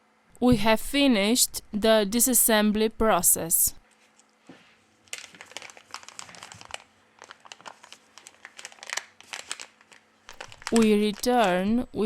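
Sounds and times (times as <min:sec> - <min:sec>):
plastic crinkling and clicking: 0:05.1 - 0:11.7.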